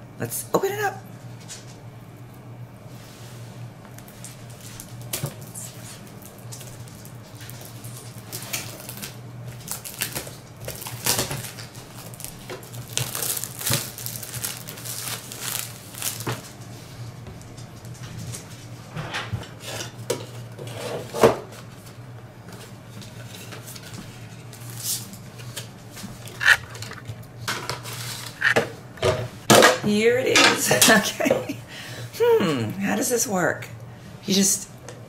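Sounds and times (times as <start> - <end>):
packaging rustling and crinkling: 4.0 - 16.5.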